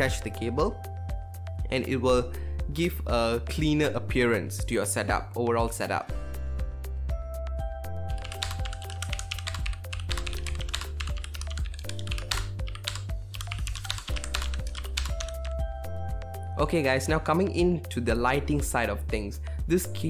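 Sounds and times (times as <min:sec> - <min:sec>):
background music: 0:00.0 - 0:20.0
mechanical keyboard typing: 0:08.1 - 0:15.6.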